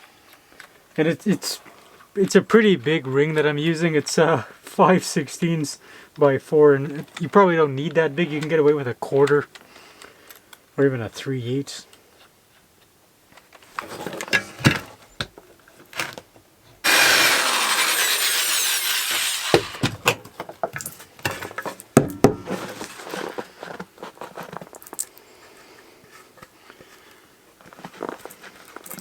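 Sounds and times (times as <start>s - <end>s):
power drill boring into wood: 16.8s - 20.2s.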